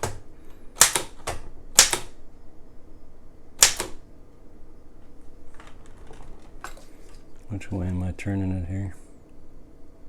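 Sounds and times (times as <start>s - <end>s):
typewriter key clack: 0.0s - 0.2s, 0.8s - 2.2s, 3.6s - 4.0s.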